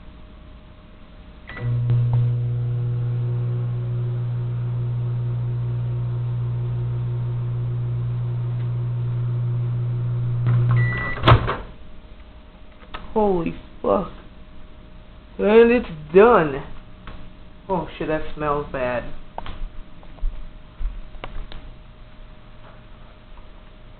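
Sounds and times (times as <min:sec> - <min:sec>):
microwave oven humming: 0:00.0 - 0:12.6.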